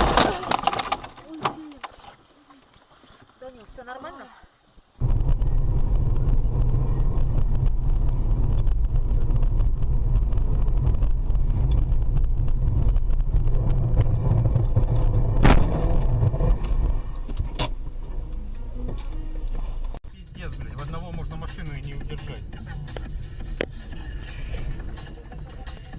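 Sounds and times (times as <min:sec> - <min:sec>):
car engine and road rumble: 0:05.0 - 0:25.7.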